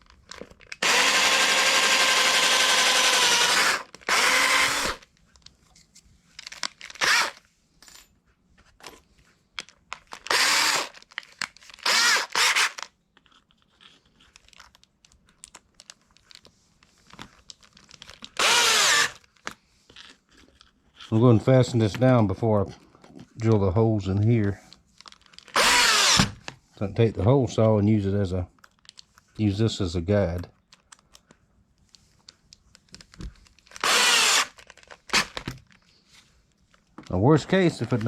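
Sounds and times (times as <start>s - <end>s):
electric drill whining: 0.8s - 5.0s, 7.0s - 7.4s, 10.3s - 11.0s, 11.8s - 12.8s, 18.4s - 19.2s, 25.6s - 26.4s, 33.8s - 35.3s.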